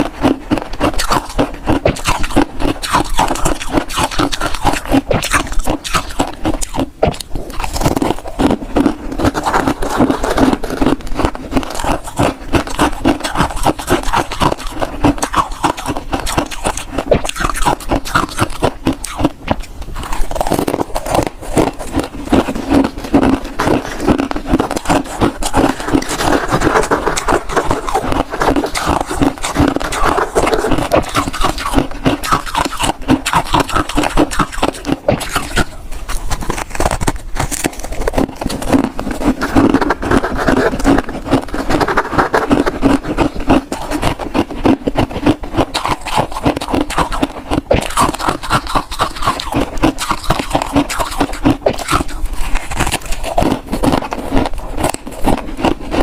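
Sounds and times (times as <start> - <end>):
chewing crisp crunches: 0.0 - 56.0.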